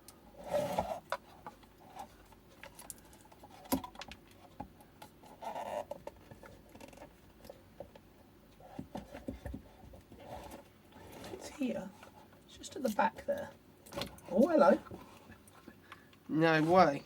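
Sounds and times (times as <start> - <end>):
hands clicking and tapping wires: 1.0 - 5.2.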